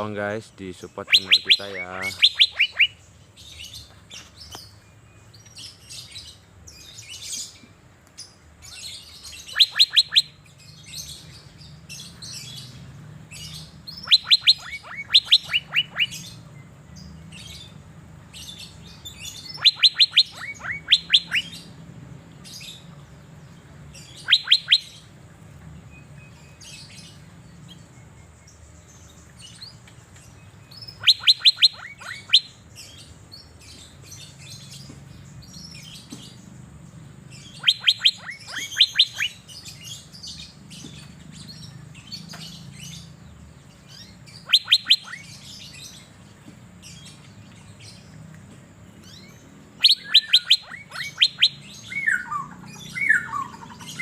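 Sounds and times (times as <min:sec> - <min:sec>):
soft bird chirps: 0:00.0 - 0:54.0
bird whistling: 0:01.0 - 0:03.0, 0:09.3 - 0:10.4, 0:13.5 - 0:16.4, 0:18.6 - 0:21.7, 0:24.0 - 0:25.0, 0:30.7 - 0:32.6, 0:37.4 - 0:40.4, 0:43.9 - 0:46.0, 0:49.1 - 0:54.0.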